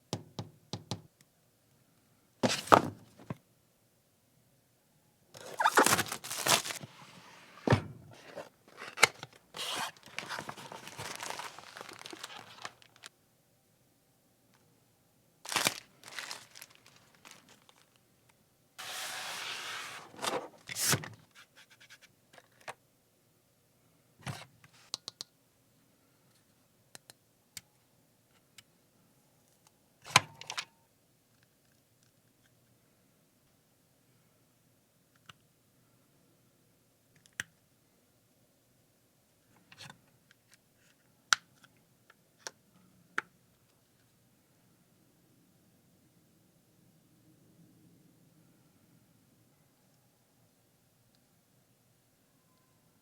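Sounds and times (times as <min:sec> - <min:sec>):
packaging rustling and scraping: 0:02.4 - 0:03.3, 0:05.4 - 0:13.1, 0:15.5 - 0:18.0, 0:18.8 - 0:21.1.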